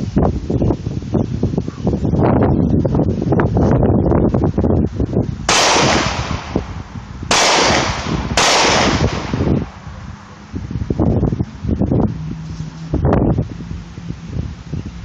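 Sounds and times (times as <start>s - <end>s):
pistol shots with echo: 5.5s - 9.7s.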